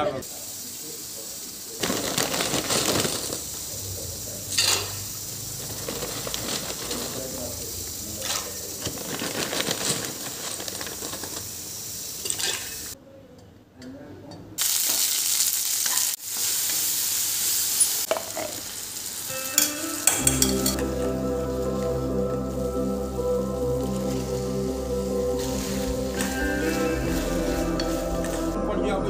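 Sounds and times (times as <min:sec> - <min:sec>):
sizzling hiss: 0:00.0 - 0:13.0, 0:14.6 - 0:28.8
soft music: 0:19.3 - 0:29.0.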